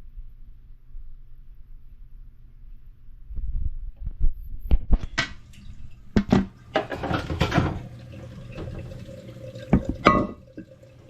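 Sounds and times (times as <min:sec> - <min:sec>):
water running into toilet tank: 0:05.2 - 0:11.0
knocks and clatter: 0:06.2 - 0:07.9.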